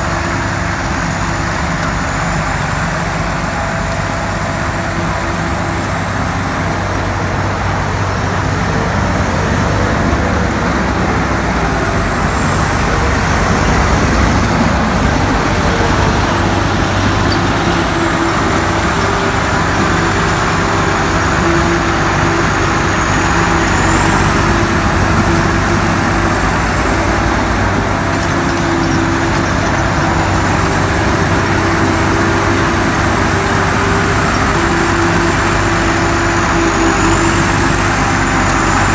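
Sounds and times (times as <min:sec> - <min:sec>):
combine harvester engine hum: 0:00.0 - 0:38.9
rushing blower noise: 0:00.0 - 0:38.9.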